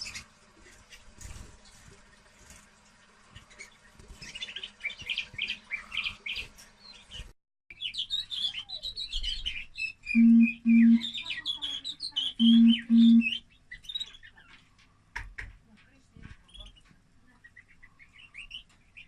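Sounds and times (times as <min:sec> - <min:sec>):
finches chirping and twittering: 0:03.5 - 0:14.6
low buzzing beeps: 0:10.2 - 0:11.1, 0:12.4 - 0:13.3.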